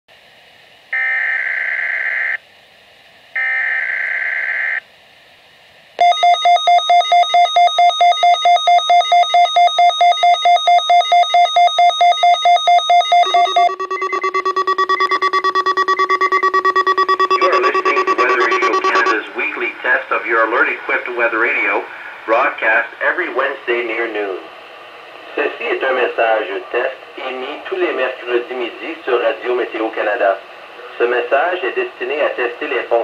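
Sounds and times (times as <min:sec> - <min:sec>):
pulsing electronic alert tone: 0:10.0 - 0:19.3
buzzy digital data bursts: 0:12.9 - 0:19.7.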